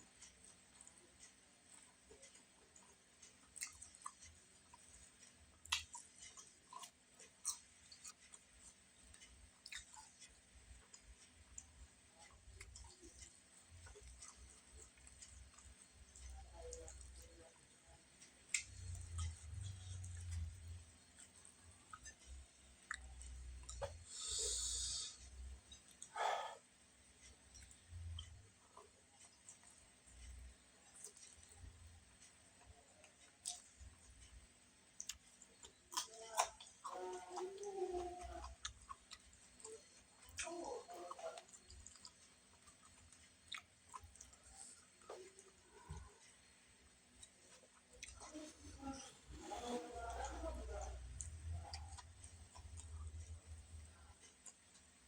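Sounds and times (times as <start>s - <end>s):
chewing with small clicks: 0.0s - 55.0s
breathy hiss: 24.0s - 25.3s.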